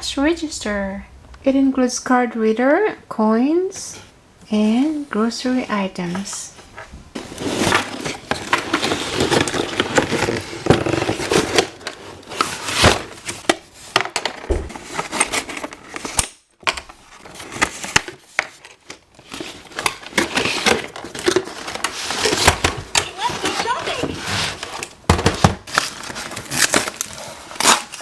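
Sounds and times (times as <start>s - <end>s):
crinkling plastic and cardboard: 5.8s - 28.0s.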